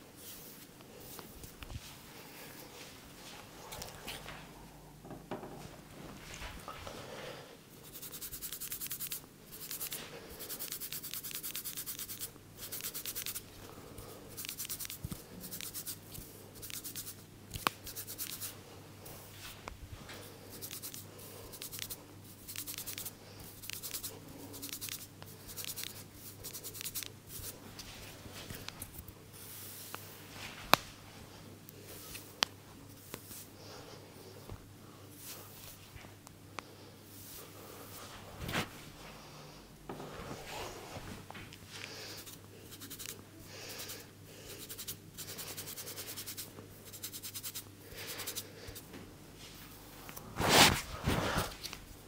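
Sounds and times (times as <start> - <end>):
rubbing and scratching hair: 7.8 - 34.5, 40.1 - 52.0.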